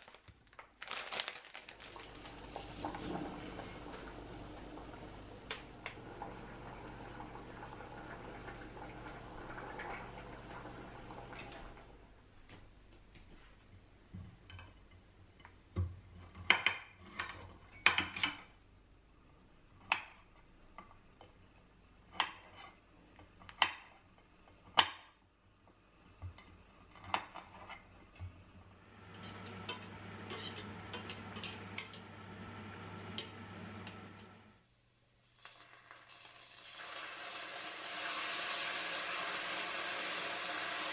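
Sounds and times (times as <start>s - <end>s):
utensils clinking against pans: 2.6s - 4.0s, 29.1s - 32.2s
food sizzling in a pan: 35.2s - 40.9s.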